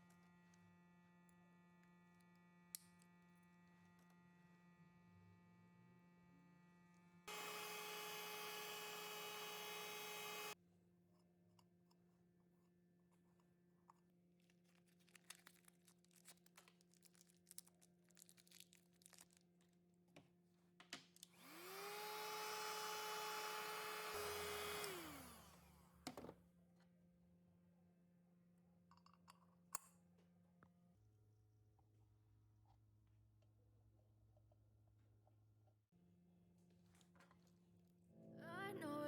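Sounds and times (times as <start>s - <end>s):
small power tool motor whining: 7.3s - 10.6s, 21.4s - 25.9s.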